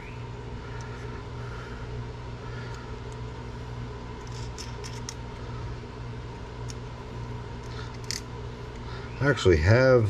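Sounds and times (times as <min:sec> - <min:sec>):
fan humming: 0:00.0 - 0:10.0
small parts clicking: 0:04.2 - 0:05.2, 0:07.6 - 0:08.9.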